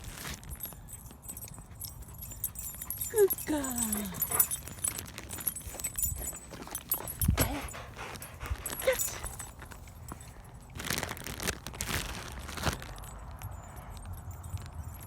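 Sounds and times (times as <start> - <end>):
dog panting: 1.8 - 10.3.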